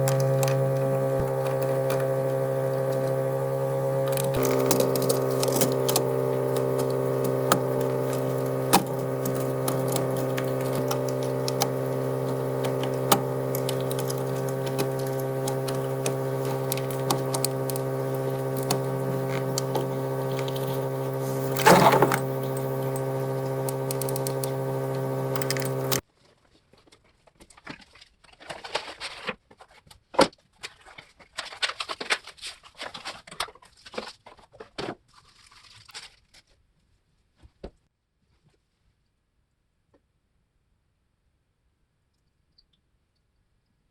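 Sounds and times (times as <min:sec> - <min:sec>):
steady machine hum: 0:00.0 - 0:26.0
scattered clicks: 0:03.9 - 0:26.0
rustling of things handled: 0:26.1 - 0:38.9.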